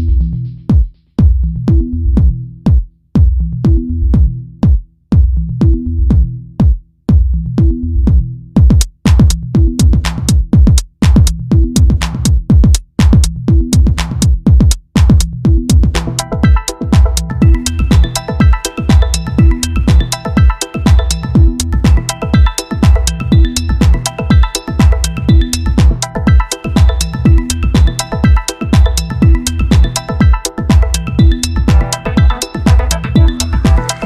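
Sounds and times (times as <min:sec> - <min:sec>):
electronic dance music: 0:08.7 - 0:34.0.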